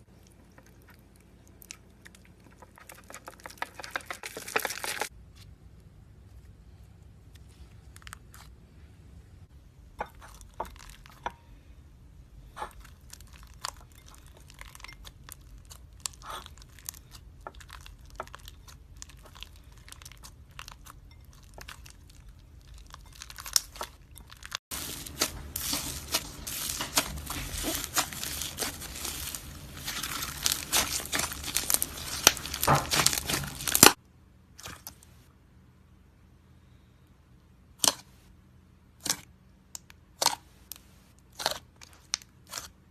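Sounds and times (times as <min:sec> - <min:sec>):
slime crackling and crinkling: 0:00.8 - 0:05.1, 0:12.4 - 0:34.0.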